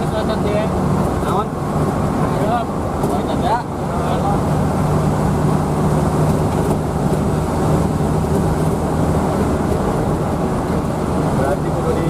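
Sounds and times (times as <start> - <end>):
bus engine hum: 0.0 - 12.0
road noise: 0.0 - 12.0.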